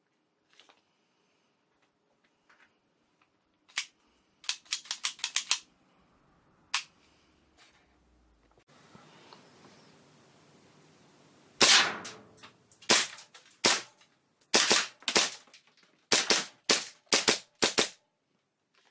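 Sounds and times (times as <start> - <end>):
airsoft pistol shots: 11.6 - 12.3.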